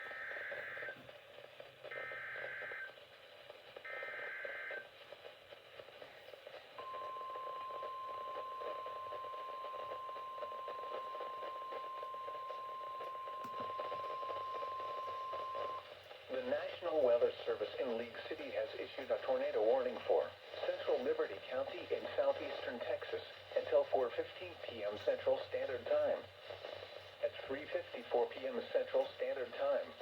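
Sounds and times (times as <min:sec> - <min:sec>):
steady warning alarm tone: 0:00.0 - 0:01.0, 0:06.8 - 0:15.8
faint radio static hiss: 0:00.0 - 0:30.0.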